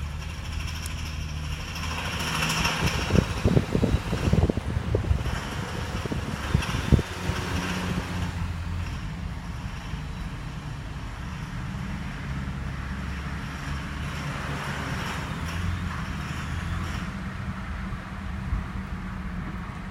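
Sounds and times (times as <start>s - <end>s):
rattle: 0.0s - 8.0s
car engine droning: 0.0s - 19.9s.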